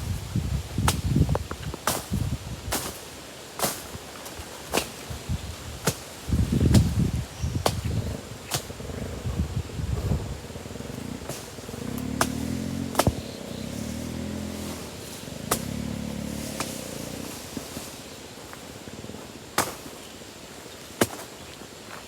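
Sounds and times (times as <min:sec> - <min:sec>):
low motor-like hum: 0:07.9 - 0:17.9
sharp knocks: 0:12.2 - 0:13.2.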